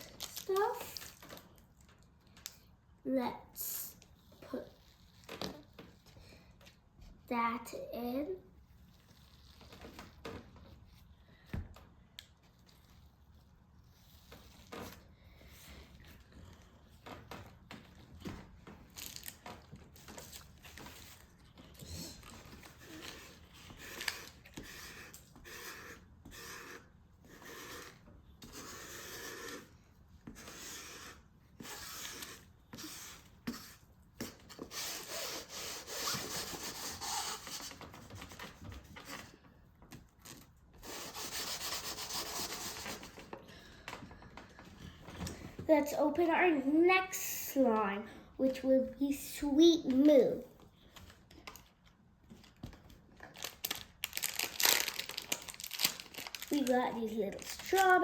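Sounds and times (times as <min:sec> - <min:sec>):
slime rubbing and scraping: 0:08.8 - 0:11.2, 0:18.9 - 0:38.4, 0:40.8 - 0:43.3, 0:53.3 - 0:58.0.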